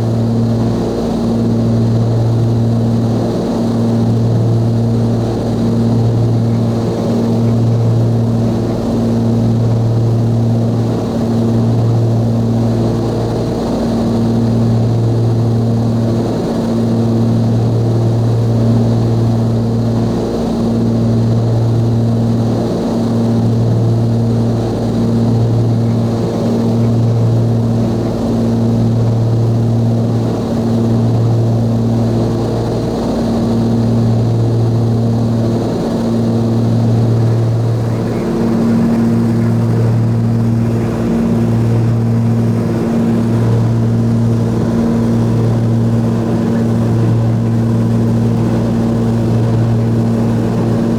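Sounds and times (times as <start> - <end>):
aircraft engines and propellers droning: 0.0 - 50.9.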